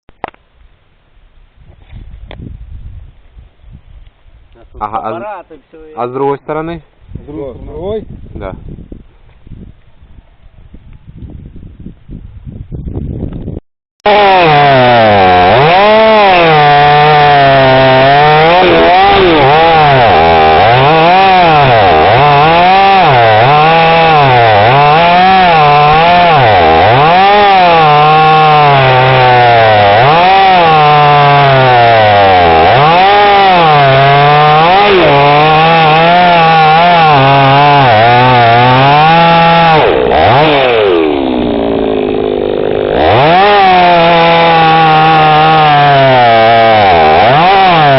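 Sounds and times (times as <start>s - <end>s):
chainsaw engine revving: 14.1s - 47.9s.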